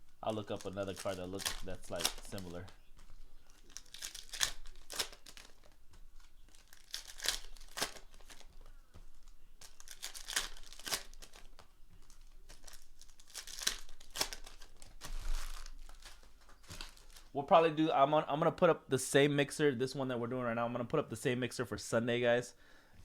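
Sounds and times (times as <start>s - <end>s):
foil wrappers tearing and crinkling: 0.0s - 17.4s.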